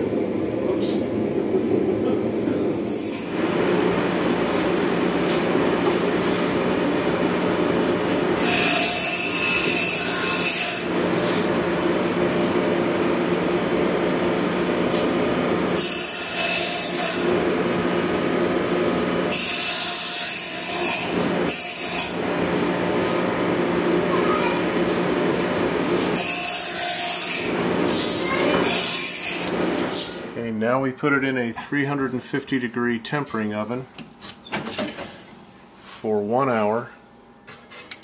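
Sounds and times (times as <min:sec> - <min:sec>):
steady machine drone: 0:00.0 - 0:19.5, 0:20.8 - 0:26.2.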